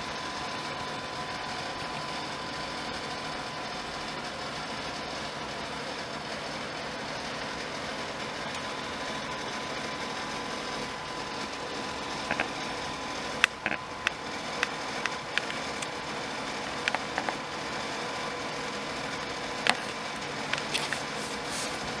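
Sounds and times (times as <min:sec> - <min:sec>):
light clicks and taps: 0:12.3 - 0:12.5, 0:13.4 - 0:22.0
steady hiss: 0:14.6 - 0:22.0.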